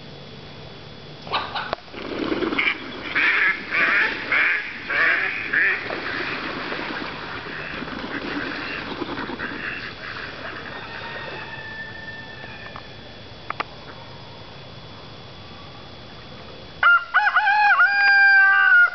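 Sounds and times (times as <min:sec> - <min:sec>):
rooster squawking: 0:09.4 - 0:12.8.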